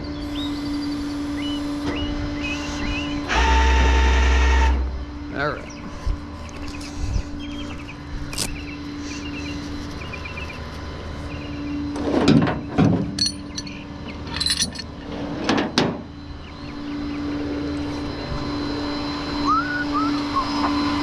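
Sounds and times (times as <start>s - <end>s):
steady low hum: 0.0s - 21.0s
metallic clinks and knocks: 12.9s - 15.0s.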